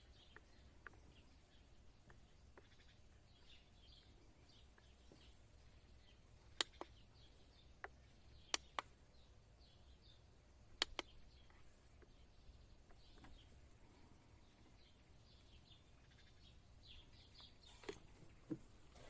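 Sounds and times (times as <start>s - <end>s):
faint bird chirps: 0.0s - 19.0s
sharp clicks: 6.5s - 7.1s, 7.8s - 9.0s, 10.6s - 12.2s.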